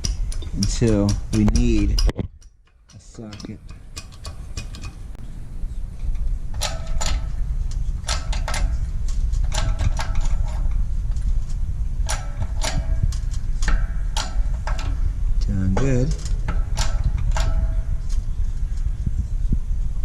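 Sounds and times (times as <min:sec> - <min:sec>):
metallic clicks of pump handle: 0:00.0 - 0:05.1, 0:08.0 - 0:08.8, 0:12.0 - 0:18.2
steady low rumble: 0:00.0 - 0:20.0.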